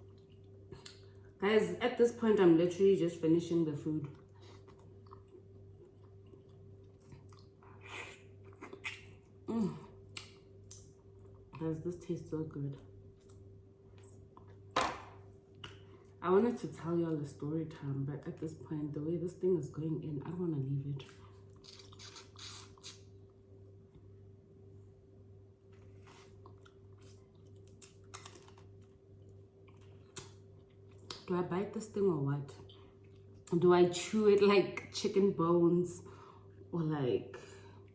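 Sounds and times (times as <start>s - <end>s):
chewing and smacking: 0.0s - 1.2s, 4.0s - 9.4s, 13.2s - 14.7s, 21.0s - 23.4s, 25.7s - 31.3s
faint low hum: 0.0s - 37.9s
person humming mm: 9.5s - 10.0s.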